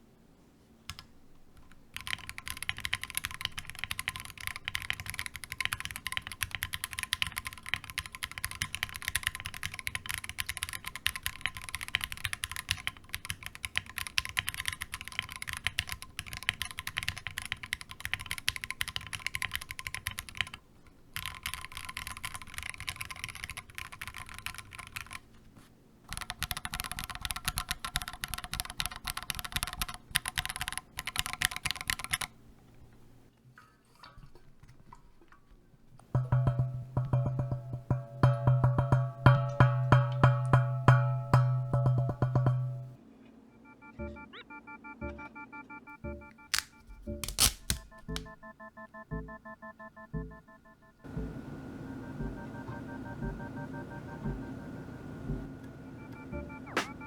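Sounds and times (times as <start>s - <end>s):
mechanical keyboard typing: 0.9s - 25.3s, 26.1s - 32.4s, 46.2s - 48.4s.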